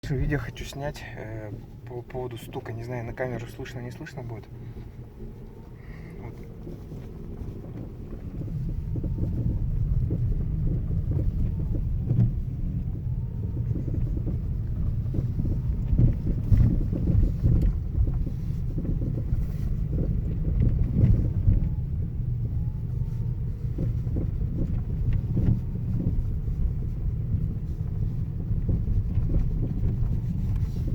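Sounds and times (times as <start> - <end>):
low road rumble: 0.0 - 30.9
suspension knocking: 6.3 - 30.9.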